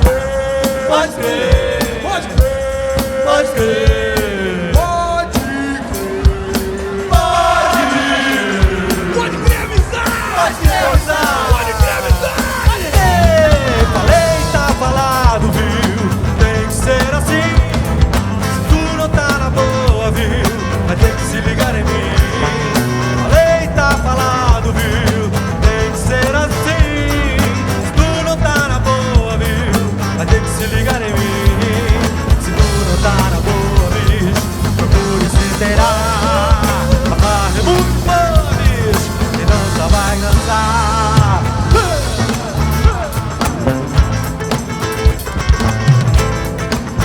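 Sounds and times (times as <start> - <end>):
soul-funk song: 0.0 - 47.0.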